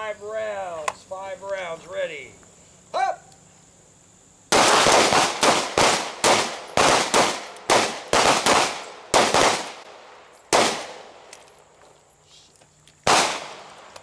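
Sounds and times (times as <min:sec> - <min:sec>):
pistol shots: 0:04.5 - 0:11.3, 0:13.1 - 0:14.0.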